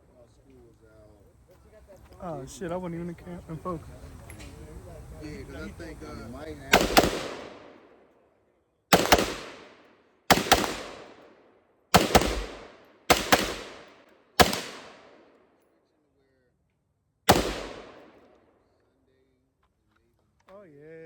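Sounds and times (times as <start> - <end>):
gunshots with echo: 6.7 - 7.9, 8.9 - 15.4, 17.3 - 18.3.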